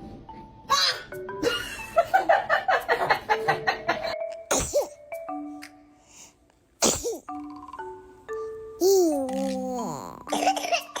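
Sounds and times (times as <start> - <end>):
small child sneezing: 4.5 - 5.0, 6.8 - 7.3.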